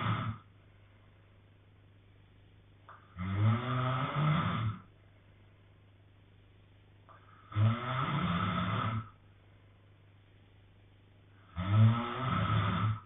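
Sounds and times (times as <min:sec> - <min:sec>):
man snoring: 0:00.0 - 0:00.5, 0:03.1 - 0:04.9, 0:07.4 - 0:09.2, 0:11.4 - 0:13.0.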